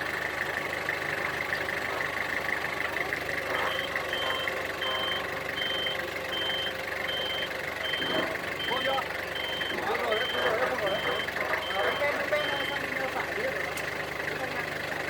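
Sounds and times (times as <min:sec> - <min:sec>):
truck engine running: 0:00.0 - 0:15.0
reversing alarm beeping: 0:03.5 - 0:13.1.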